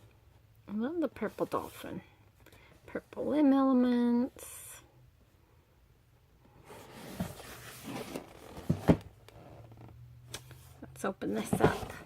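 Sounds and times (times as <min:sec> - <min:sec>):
cardboard box rustling: 0:06.6 - 0:09.1, 0:11.4 - 0:12.0.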